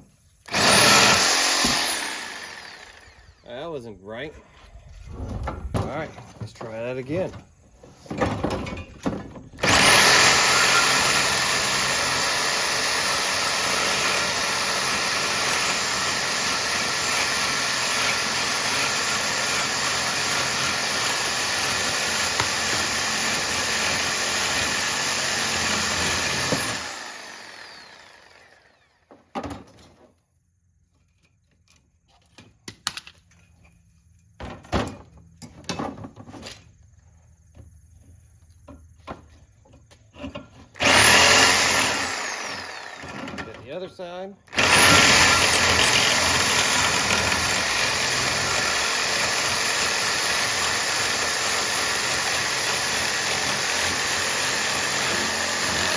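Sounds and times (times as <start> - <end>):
reciprocating saw cutting metal: 0.5 - 3.5, 9.6 - 28.8, 40.8 - 43.8, 44.5 - 55.9.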